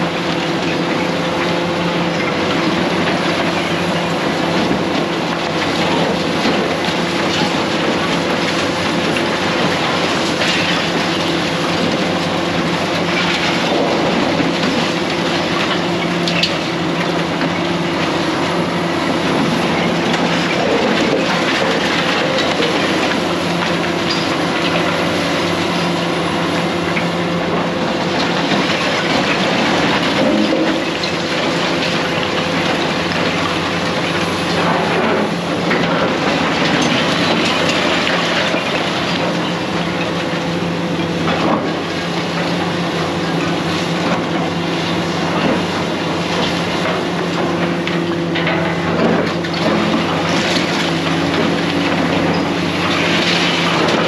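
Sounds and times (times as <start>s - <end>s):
demolition machinery engine: 0.0s - 54.0s
clanks and crunches: 26.9s - 42.5s, 46.3s - 54.0s
metal and debris grinding: 29.2s - 31.3s.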